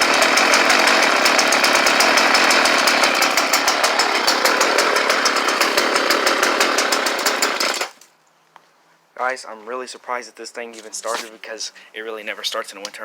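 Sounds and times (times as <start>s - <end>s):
chainsaw engine running: 0.0s - 8.0s.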